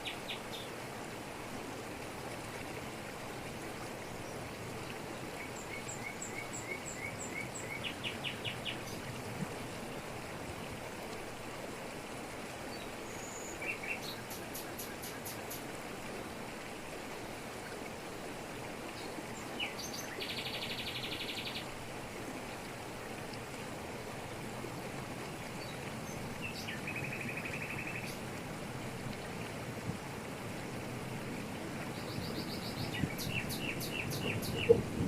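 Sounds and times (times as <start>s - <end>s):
birds calling and trilling: 32.0s - 34.8s.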